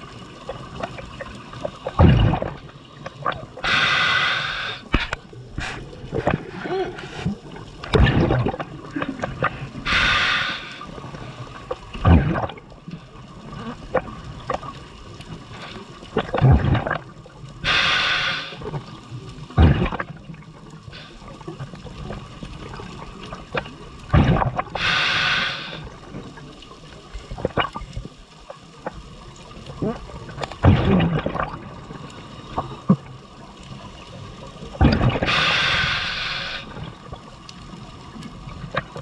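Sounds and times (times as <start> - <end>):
gurgling exhaust bubbles: 0.0 - 4.6, 6.0 - 10.6, 11.9 - 14.7, 15.6 - 18.9, 19.5 - 26.4, 29.7 - 33.2, 34.6 - 37.3
regulator breathing inhalation hiss: 3.6 - 6.0, 9.8 - 11.5, 17.6 - 18.8, 21.0 - 21.2, 24.7 - 26.0, 35.2 - 36.9.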